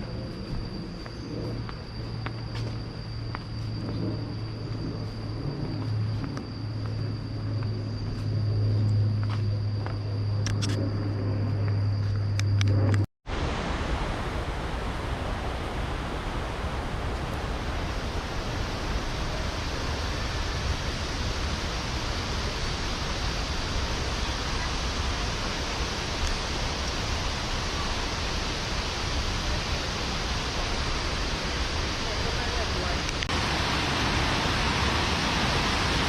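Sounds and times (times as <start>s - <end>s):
short low hum: 0.0s - 27.8s
waterfall rushing: 13.3s - 36.0s.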